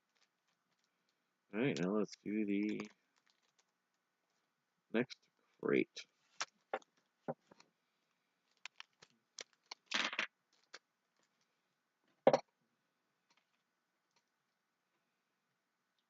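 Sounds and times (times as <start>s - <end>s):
plastic parts clicking and tapping: 2.6s - 3.7s, 8.5s - 11.4s.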